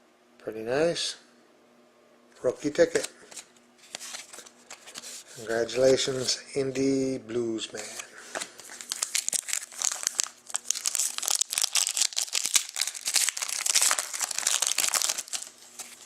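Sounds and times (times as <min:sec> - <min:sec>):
wrapper crinkling and tearing: 0:08.6 - 0:16.0.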